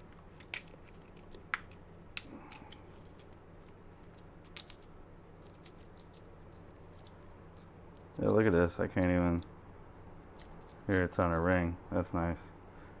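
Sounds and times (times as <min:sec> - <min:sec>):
small parts clicking and tapping: 0:00.0 - 0:09.5, 0:10.3 - 0:11.2
faint electrical hum: 0:00.0 - 0:13.0.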